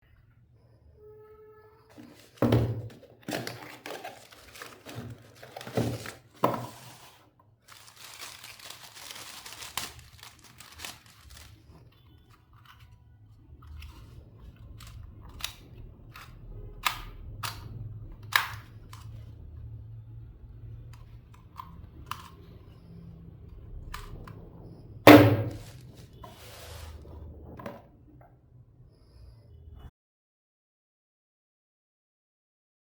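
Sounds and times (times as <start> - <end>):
packaging rustling and tearing: 1.9 - 11.9, 25.4 - 27.0.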